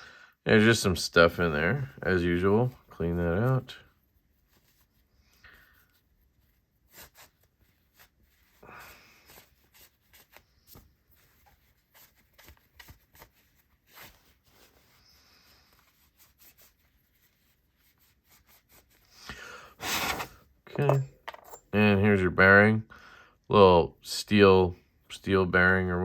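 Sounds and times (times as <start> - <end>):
brief rubbing: 19.8 - 20.4.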